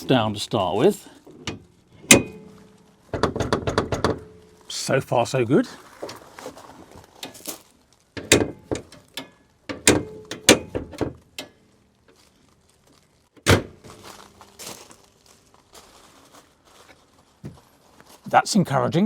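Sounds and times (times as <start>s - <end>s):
car bonnet clunks: 1.4s - 4.4s, 8.2s - 11.5s, 13.4s - 14.0s.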